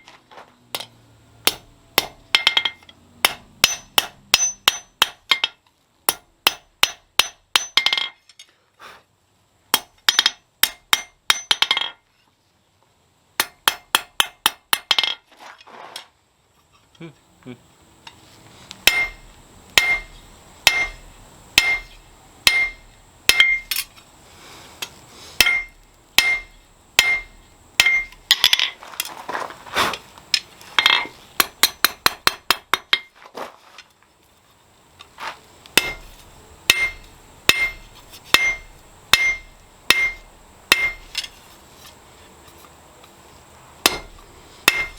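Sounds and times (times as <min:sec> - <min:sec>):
hammer striking steel on anvil: 0:00.8 - 0:08.2, 0:09.7 - 0:12.0, 0:13.4 - 0:15.1, 0:18.8 - 0:23.9, 0:25.4 - 0:28.6, 0:30.8 - 0:33.1, 0:35.8 - 0:41.3, 0:43.8 - 0:44.9
steady hiss with high whine: 0:16.0 - 0:31.7, 0:33.8 - 0:44.9.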